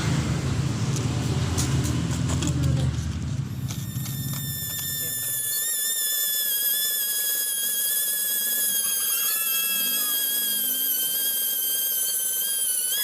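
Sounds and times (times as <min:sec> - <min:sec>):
rotary power tool whining: 0:03.5 - 0:13.0.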